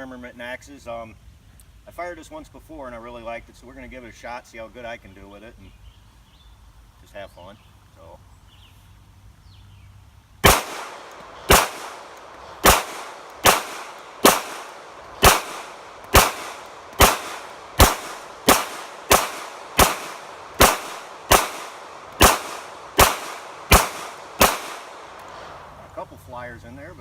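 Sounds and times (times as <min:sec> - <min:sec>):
pistol gunshots: 0:10.4 - 0:25.7.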